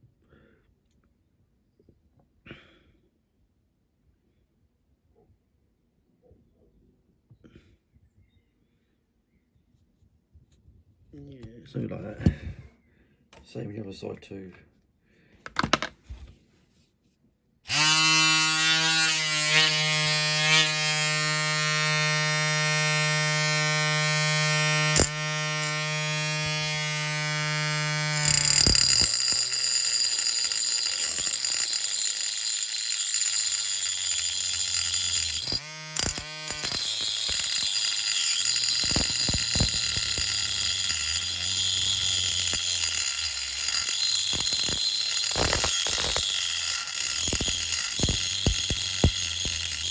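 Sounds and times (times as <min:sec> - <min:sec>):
rotary tool grinding metal: 0:17.7 - 0:49.9
rotary tool humming: 0:17.7 - 0:49.9.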